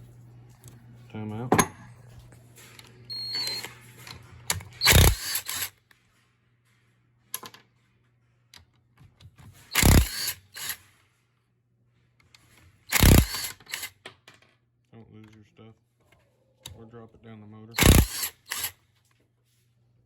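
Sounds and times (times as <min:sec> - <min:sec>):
low steady hum: 0:00.0 - 0:05.2.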